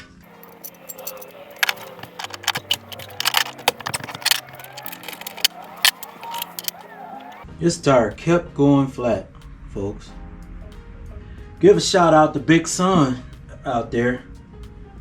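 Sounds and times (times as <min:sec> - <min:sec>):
wrenches clinking and rattling: 0:00.3 - 0:07.4.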